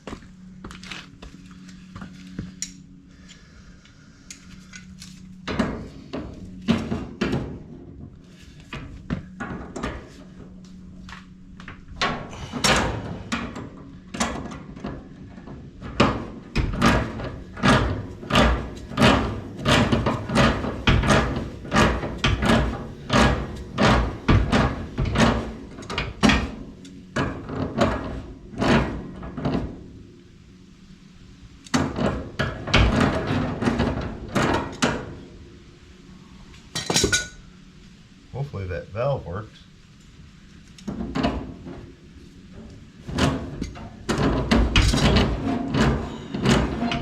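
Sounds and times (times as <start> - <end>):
scraping and knocking on metal pipe: 12.0 - 29.9, 31.7 - 35.2, 42.6 - 47.0.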